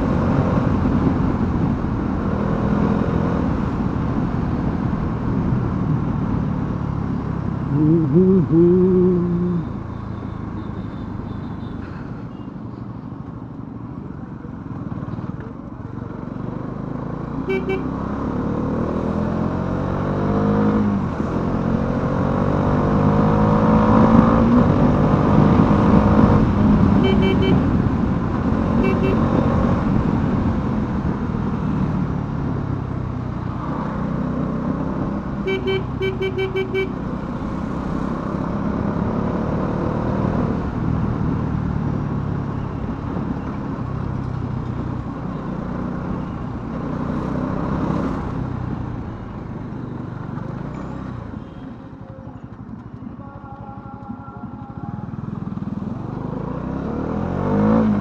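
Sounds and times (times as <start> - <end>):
motorcycle engine accelerating: 0.0 - 9.8
short horn beeps: 17.5 - 17.9, 27.0 - 27.7, 28.8 - 29.4, 35.5 - 37.0.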